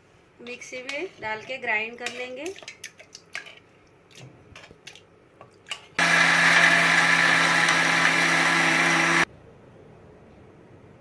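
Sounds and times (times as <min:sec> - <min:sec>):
electric mixer grinder running: 0:06.0 - 0:09.3.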